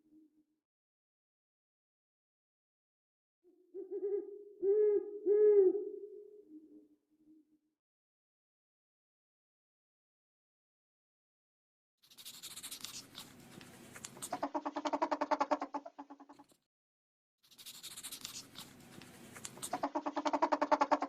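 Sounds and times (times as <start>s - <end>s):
animal call with hissy pulses: 12.1s - 16.4s, 17.5s - 18.8s, 19.4s - 21.0s.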